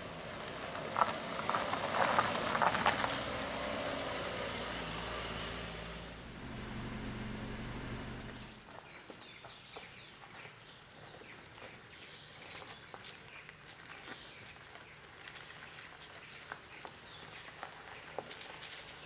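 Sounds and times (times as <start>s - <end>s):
car engine running: 1.0s - 8.6s
birds chirping: 4.9s - 8.6s.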